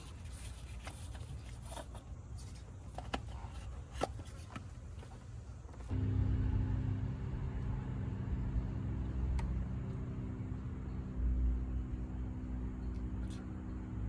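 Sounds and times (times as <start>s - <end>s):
car engine idling: 5.9s - 14.0s.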